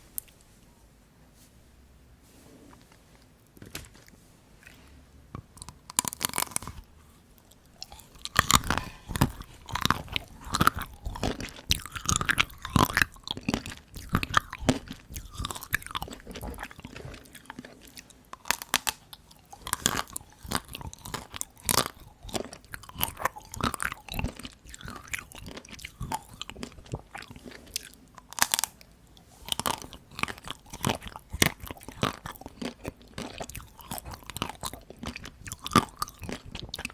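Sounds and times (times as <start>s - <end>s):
chocolate coating crunching: 3.5s - 36.9s.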